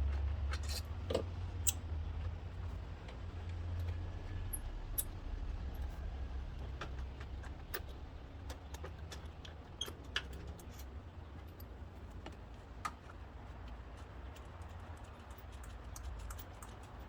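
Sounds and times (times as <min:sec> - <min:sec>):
low rumble: 0:03.8 - 0:08.5.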